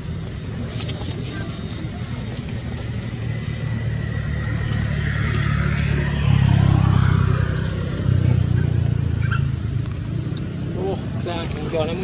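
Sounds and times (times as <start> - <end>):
vehicle engine humming: 0.0 - 12.0.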